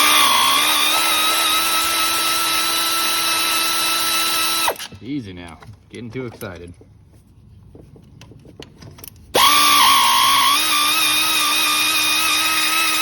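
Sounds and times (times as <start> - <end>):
power tool motor whining: 0.0 - 5.0, 9.4 - 13.0.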